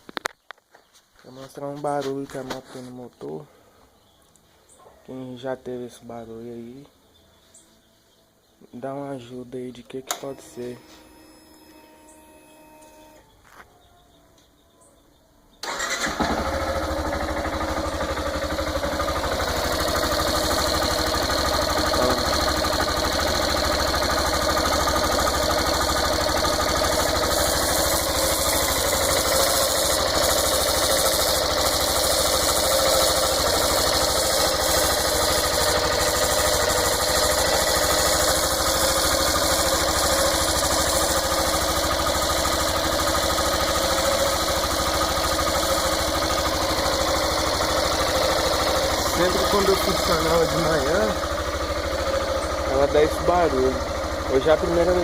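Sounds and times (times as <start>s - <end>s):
motorcycle engine starting and idling: 9.8s - 13.7s, 15.6s - 55.0s.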